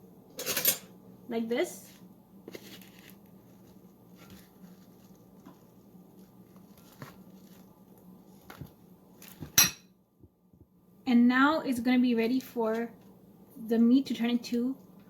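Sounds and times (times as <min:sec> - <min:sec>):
low steady hum: 0:00.0 - 0:15.0
ground beef squishing: 0:02.4 - 0:09.4.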